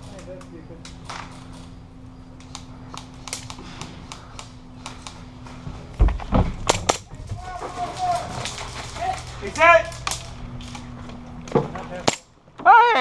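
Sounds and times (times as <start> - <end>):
airsoft gunfire clicks and snaps: 2.4 - 5.3
loud thumps: 5.9 - 7.6.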